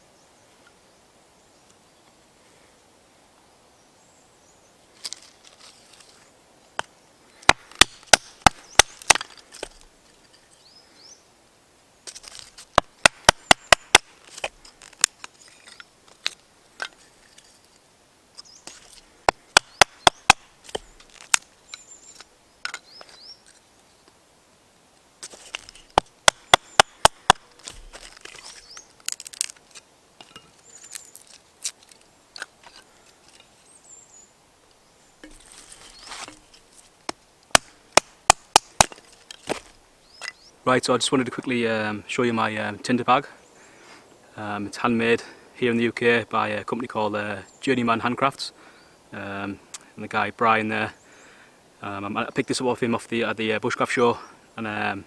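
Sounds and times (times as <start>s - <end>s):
rustling: 4.9s - 10.7s, 12.0s - 24.2s, 25.1s - 40.5s
axe chopping wood: 6.8s - 9.8s, 12.8s - 15.2s, 18.7s - 21.4s, 25.2s - 28.5s, 37.1s - 39.7s.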